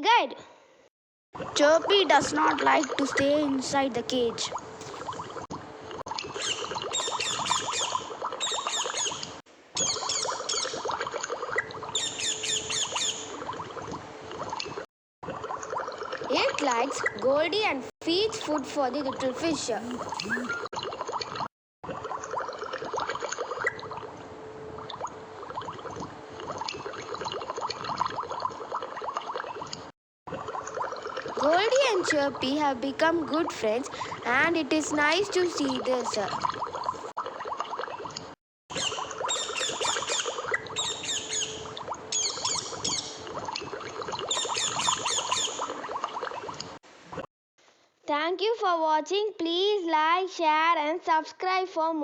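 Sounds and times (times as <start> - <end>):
water bubbling and gurgling: 1.4 - 17.3, 18.9 - 47.2
parrot chirps and squawks: 6.3 - 10.8, 12.0 - 13.3, 19.8 - 20.7, 38.7 - 43.2, 44.3 - 45.7.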